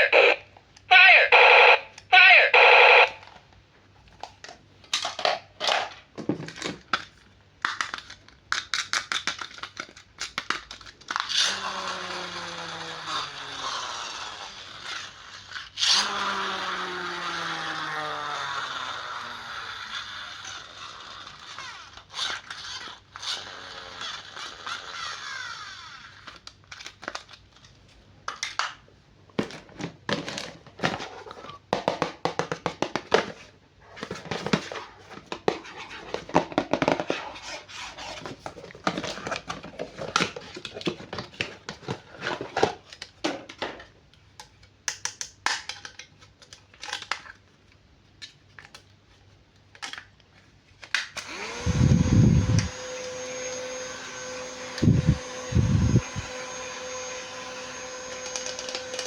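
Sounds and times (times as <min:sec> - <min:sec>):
steady hum: 0:51.6 - 0:52.9, 0:54.1 - 0:56.4.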